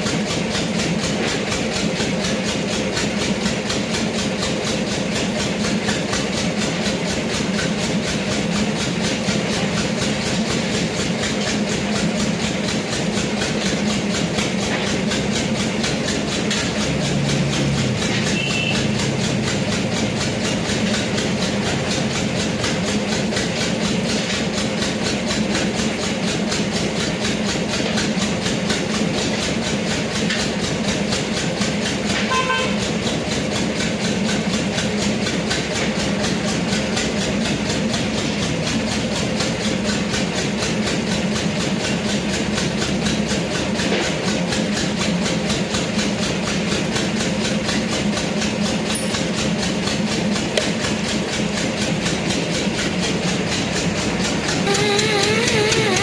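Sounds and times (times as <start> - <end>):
motor running in fast rhythm: 0.0 - 56.0
short pitched tone: 18.3 - 18.9.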